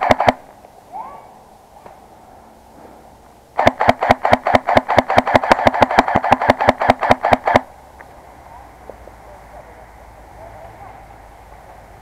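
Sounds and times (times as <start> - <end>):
airsoft rifle firing full-auto: 0.0 - 0.5, 3.6 - 7.7.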